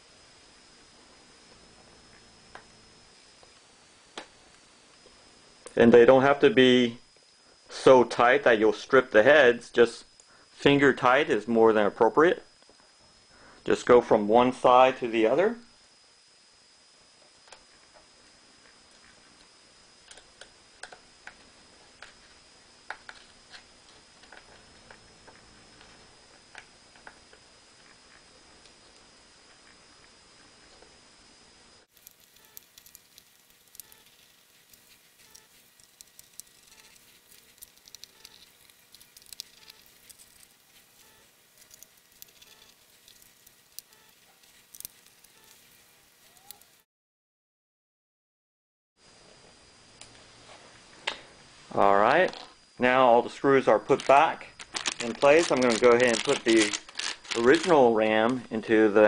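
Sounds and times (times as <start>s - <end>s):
screwdriver clicking on tiny screws: 31.9s - 46.8s.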